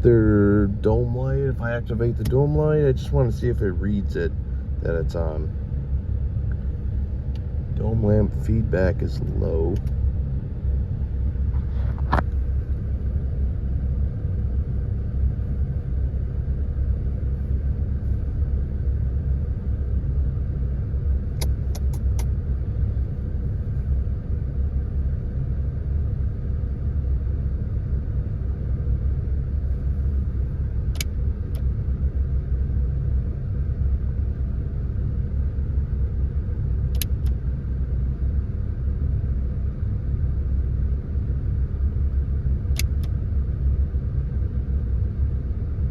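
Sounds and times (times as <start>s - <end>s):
car engine idling: 0.0s - 45.9s
short clicks: 21.4s - 22.3s.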